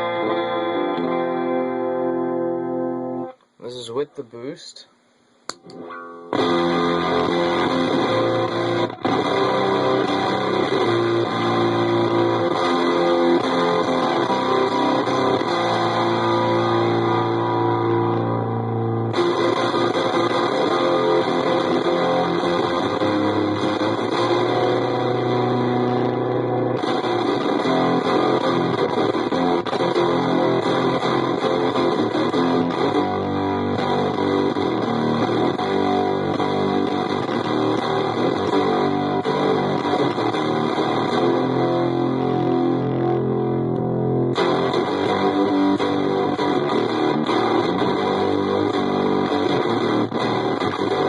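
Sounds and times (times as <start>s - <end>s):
fuzzed electric guitar chords: 0.0s - 51.0s.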